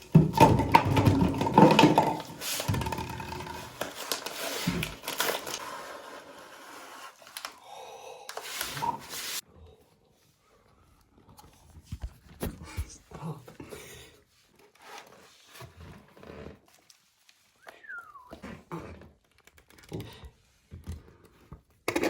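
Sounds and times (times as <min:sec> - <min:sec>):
box packaging rustling and scraping: 0:00.4 - 0:07.6.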